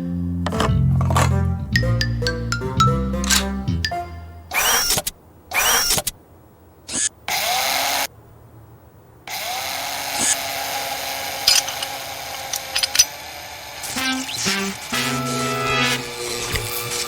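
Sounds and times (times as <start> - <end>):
mechanical whirring: 4.5 - 6.1.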